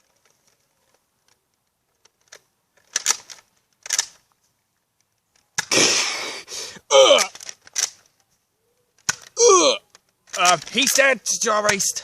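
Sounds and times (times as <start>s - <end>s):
faint clicks: 0.0s - 5.7s.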